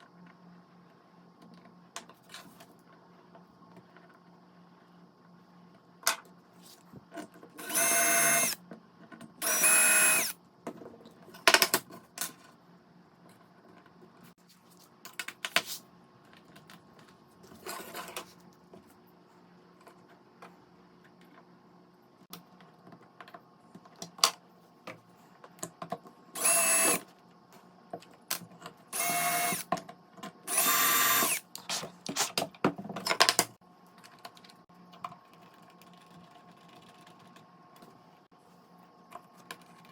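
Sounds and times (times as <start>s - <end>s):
small power tool motor: 7.6s - 8.6s, 9.4s - 10.4s, 26.4s - 27.0s, 28.9s - 29.7s, 30.5s - 31.5s.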